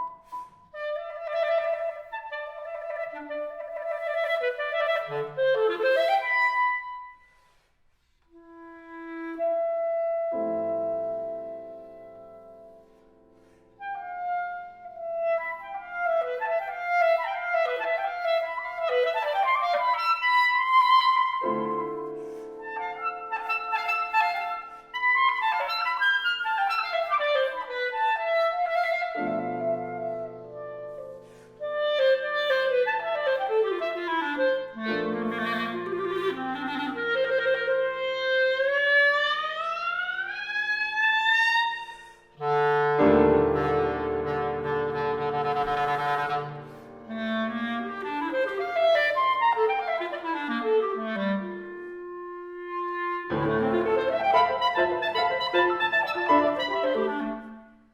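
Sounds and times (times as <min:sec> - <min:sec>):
clarinet playing fast runs: 0:00.0 - 0:07.2, 0:13.8 - 0:57.8
piano chords: 0:42.4 - 0:48.2, 0:53.3 - 0:57.6.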